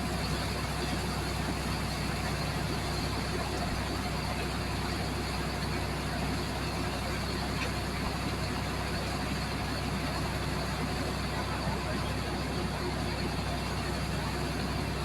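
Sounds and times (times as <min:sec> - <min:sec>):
engine droning: 0:00.0 - 0:15.0.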